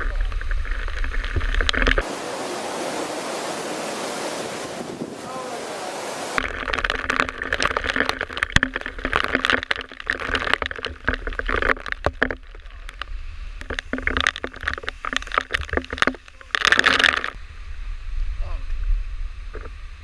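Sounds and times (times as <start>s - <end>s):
wind buffeting microphone: 0.4s - 6.4s
rushing falling water: 1.2s - 8.1s.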